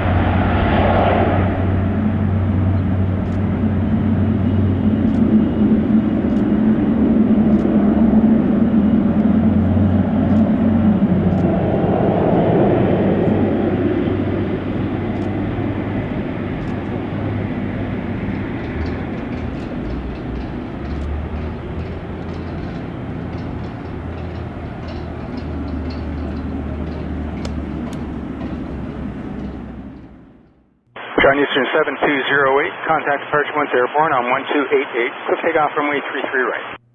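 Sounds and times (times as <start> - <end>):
jet engines rumbling: 0.0 - 30.8.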